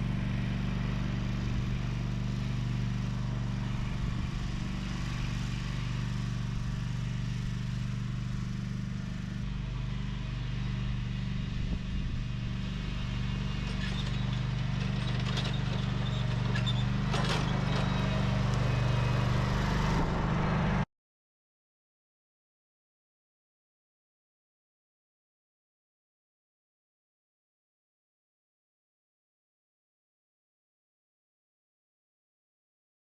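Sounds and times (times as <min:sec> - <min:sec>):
lawn mower engine running: 0:00.0 - 0:20.8.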